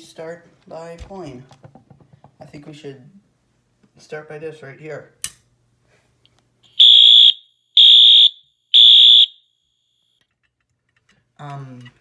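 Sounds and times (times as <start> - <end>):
fire alarm high tone blasts: 6.8 - 10.0.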